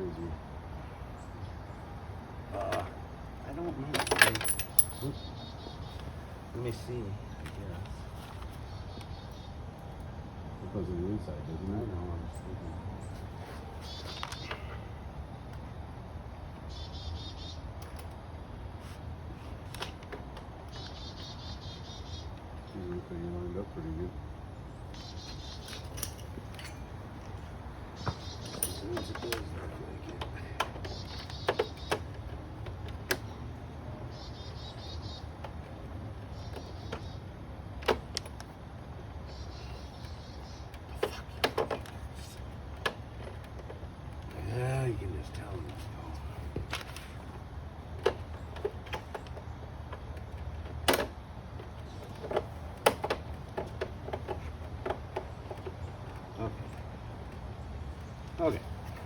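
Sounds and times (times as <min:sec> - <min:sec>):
metal tools clinking: 0:03.9 - 0:05.2, 0:25.6 - 0:27.4, 0:28.3 - 0:29.6.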